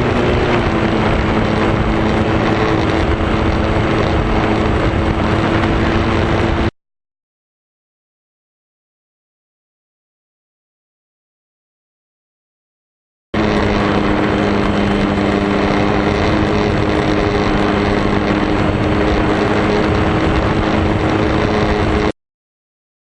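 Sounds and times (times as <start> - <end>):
model airplane motor and propeller: 0.0 - 6.7, 13.4 - 22.1
rushing wind: 0.0 - 6.7, 13.4 - 22.1.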